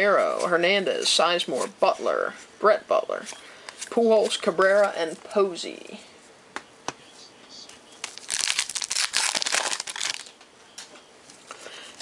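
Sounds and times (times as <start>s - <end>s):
card pack wrapper crinkling and tearing: 8.0s - 10.4s.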